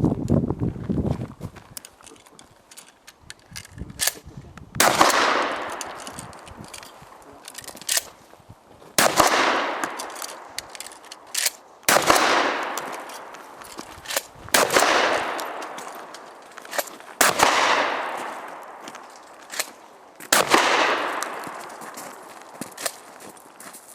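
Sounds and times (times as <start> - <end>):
shotgun shots echoing: 4.8 - 8.2, 9.0 - 23.0.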